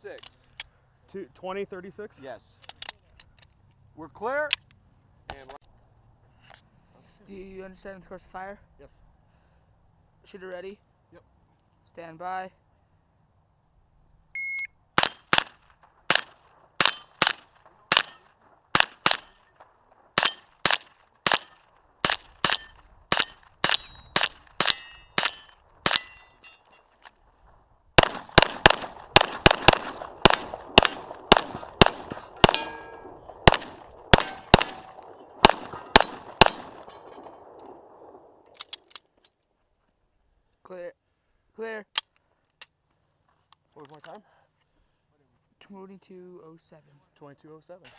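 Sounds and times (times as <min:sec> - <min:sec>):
shot timer beep: 0:14.4 - 0:14.8
gunshots: 0:15.0 - 0:26.2, 0:28.0 - 0:38.5.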